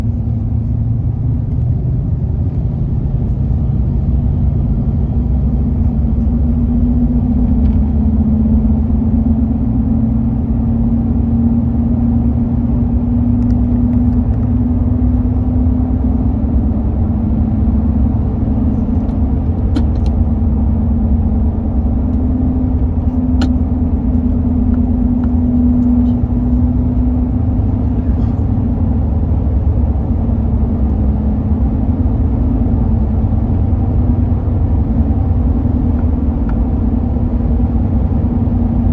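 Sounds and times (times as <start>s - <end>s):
road and engine rumble: 0.0s - 38.9s
truck humming while driving: 0.0s - 38.9s.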